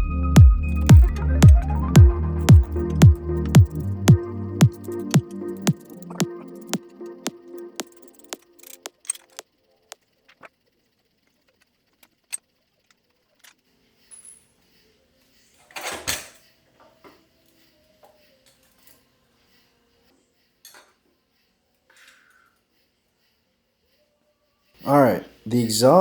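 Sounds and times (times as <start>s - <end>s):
metal tools clicking and clinking: 8.1s - 9.5s
metal parts clattering: 8.5s - 9.4s.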